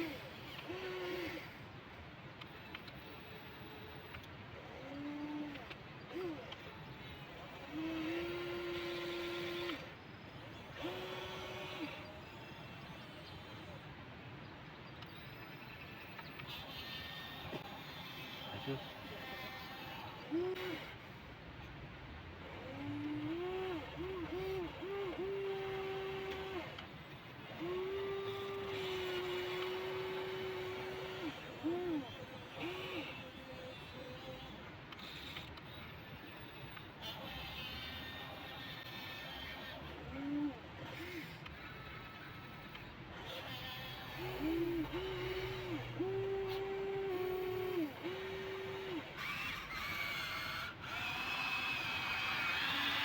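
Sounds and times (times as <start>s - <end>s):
higher-pitched motor whine: 0.0s - 1.8s, 2.4s - 53.0s
electric motors whining: 0.0s - 53.0s.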